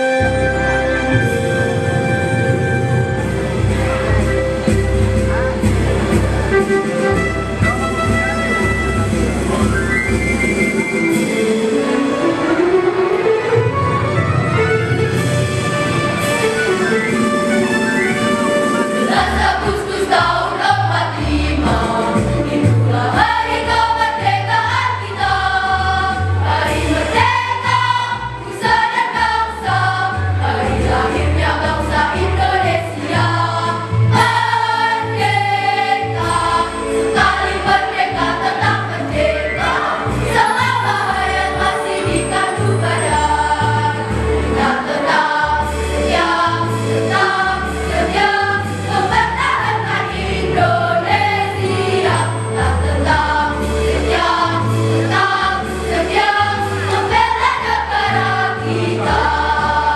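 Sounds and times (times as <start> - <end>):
instrumental accompaniment with bass: 0.0 - 59.9
choir singing in parts: 18.4 - 59.9.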